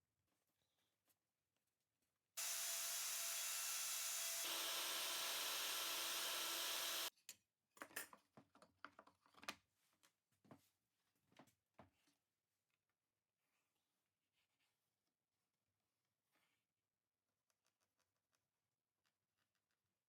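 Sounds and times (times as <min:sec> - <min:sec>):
power tool running: 0:02.4 - 0:07.1.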